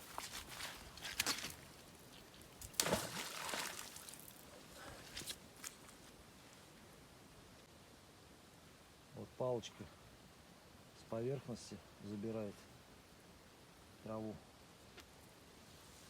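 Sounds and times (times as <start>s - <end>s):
water splashing and sloshing: 0.0s - 5.9s.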